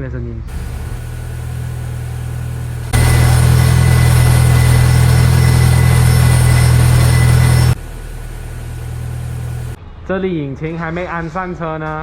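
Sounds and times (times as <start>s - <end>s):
car engine idling: 0.5s - 9.8s.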